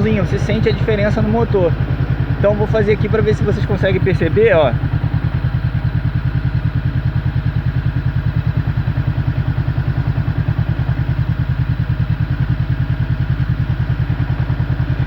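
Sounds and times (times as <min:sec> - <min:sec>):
mechanic talking: 0:00.0 - 0:04.9
motorcycle engine idling: 0:00.0 - 0:15.0.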